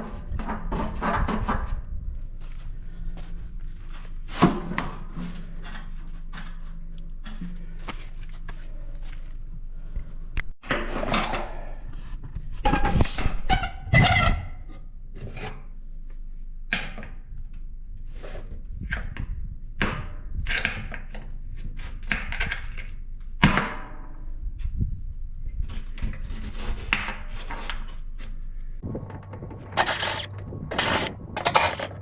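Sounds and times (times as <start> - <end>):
metal knocks and clanks: 28.9 - 32.0.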